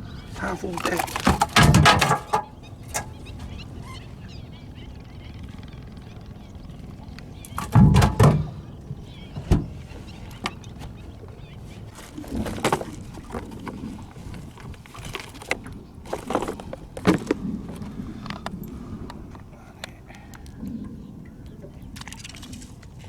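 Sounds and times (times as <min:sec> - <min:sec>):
water splashing: 0:00.0 - 0:04.4
handling noises on a boat: 0:00.0 - 0:23.0.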